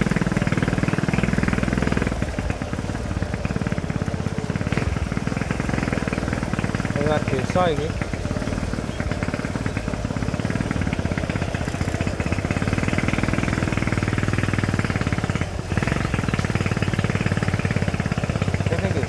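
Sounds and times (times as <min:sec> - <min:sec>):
motorcycle engine at low speed: 0:00.0 - 0:19.0.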